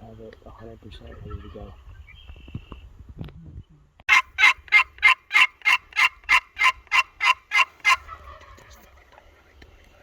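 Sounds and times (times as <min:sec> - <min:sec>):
turkey yelps: 0:04.1 - 0:08.6.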